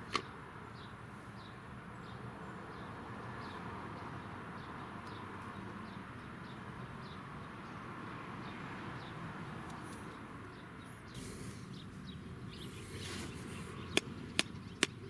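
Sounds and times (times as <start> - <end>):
small bird chirping: 9.7 - 15.0.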